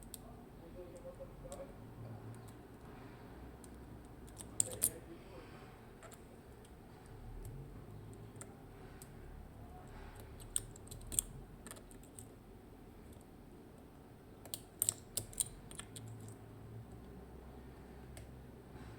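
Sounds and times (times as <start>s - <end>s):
lock picking clicks: 3.6s - 5.0s, 10.4s - 12.3s, 14.4s - 16.4s.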